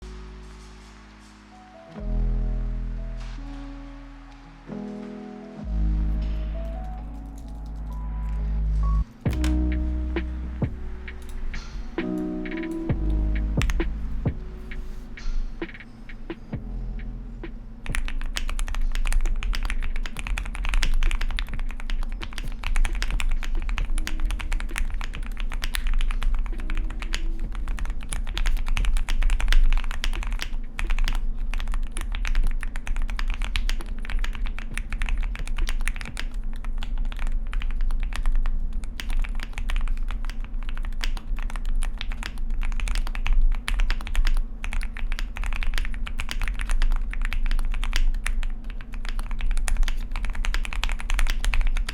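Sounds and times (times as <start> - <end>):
steady low hum: 0.0 - 51.9
mechanical keyboard typing: 17.8 - 51.9.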